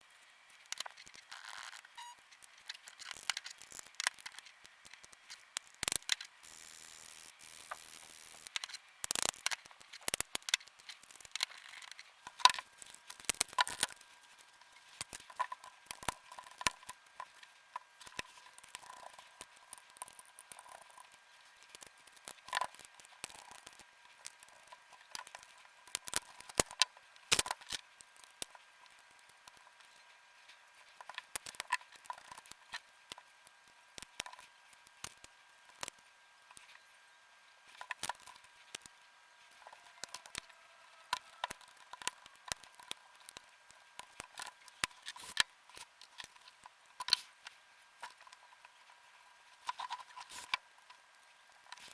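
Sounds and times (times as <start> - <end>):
faint high hum: 0.0 - 22.3.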